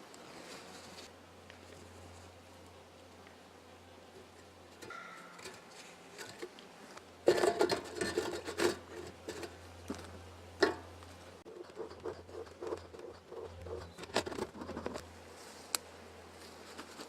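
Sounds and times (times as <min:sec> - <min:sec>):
wooden hive parts scraped and knocked: 0:04.1 - 0:15.7, 0:16.4 - 0:17.0.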